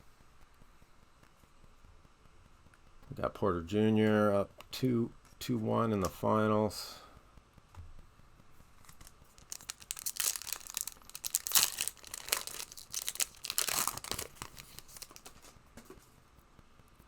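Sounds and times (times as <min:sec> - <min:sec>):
foil pack tearing and crinkling: 0:08.8 - 0:15.5.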